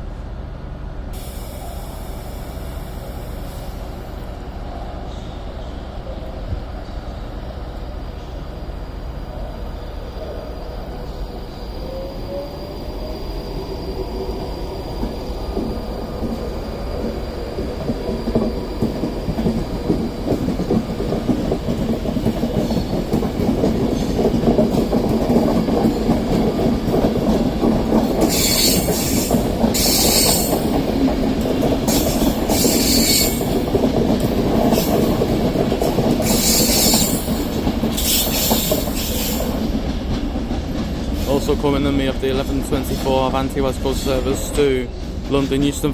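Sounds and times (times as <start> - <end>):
train wheels clattering on rails: 13.5 - 45.9
high-pitched wheel squeal: 28.3 - 29.2, 29.8 - 30.5, 32.6 - 33.4, 36.3 - 37.2.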